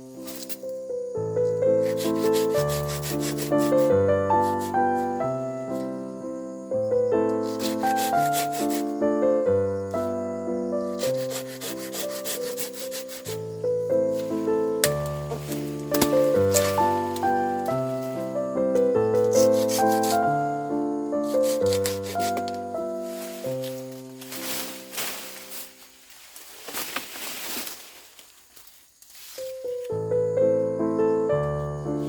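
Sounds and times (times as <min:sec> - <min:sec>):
keyboard chords: 0:00.0 - 0:11.5, 0:13.3 - 0:25.1, 0:29.7 - 0:32.0
slow melody of held notes: 0:00.0 - 0:25.8, 0:29.4 - 0:32.0
scratchy shaker percussion: 0:01.8 - 0:05.2, 0:07.4 - 0:08.9, 0:11.0 - 0:13.4, 0:19.2 - 0:20.3, 0:21.3 - 0:22.5.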